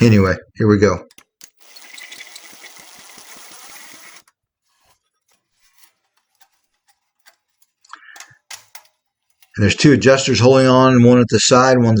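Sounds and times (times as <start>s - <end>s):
small power tool buzzing: 0.0s - 0.3s, 1.4s - 4.2s.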